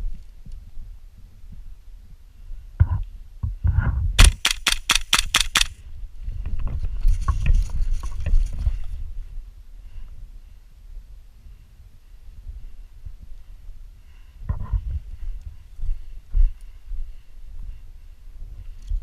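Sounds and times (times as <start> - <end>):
rustling of movement: 0.0 - 10.6
airsoft gun shots: 4.2 - 5.8.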